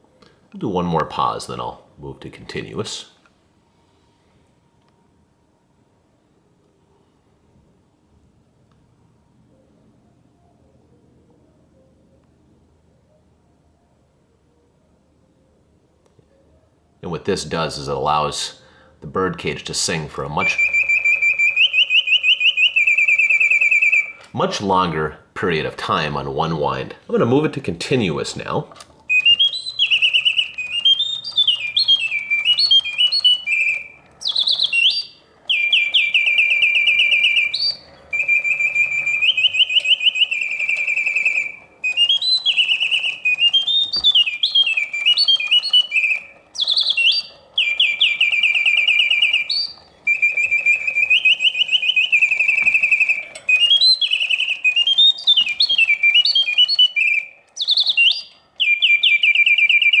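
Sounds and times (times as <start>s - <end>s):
mechanical birdsong trills: 0.6s - 3.2s, 17.0s - 60.0s.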